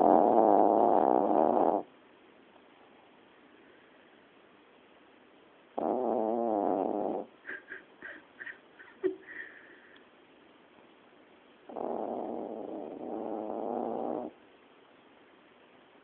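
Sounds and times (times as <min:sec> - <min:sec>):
dog snoring: 0:00.0 - 0:01.9, 0:05.7 - 0:07.3, 0:11.7 - 0:14.4.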